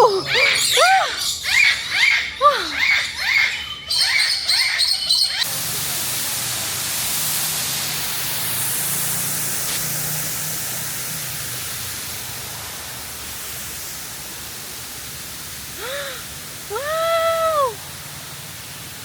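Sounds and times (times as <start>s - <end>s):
waterfall rushing: 0.0s - 1.2s, 5.4s - 19.0s.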